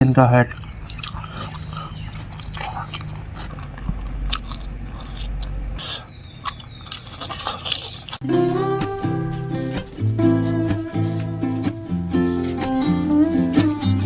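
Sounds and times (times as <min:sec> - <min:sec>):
chewing and crunching meat: 0:00.3 - 0:14.0
wet mouth clicks and smacks: 0:00.5 - 0:08.2
plucked guitar music: 0:08.2 - 0:14.0.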